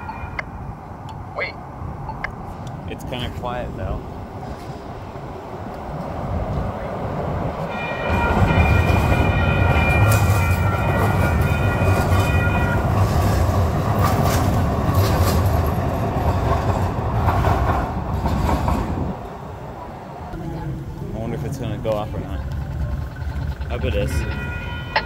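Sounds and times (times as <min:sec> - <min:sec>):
train rumbling past: 0:01.6 - 0:25.0
clacks over rails: 0:07.6 - 0:19.3, 0:21.8 - 0:25.0
high ringing wheel squeal: 0:23.0 - 0:25.0.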